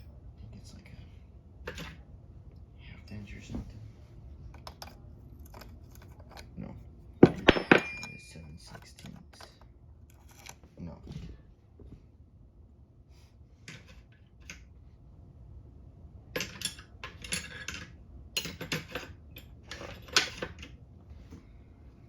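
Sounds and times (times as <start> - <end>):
metal wrenches clinking: 7.2 - 8.3.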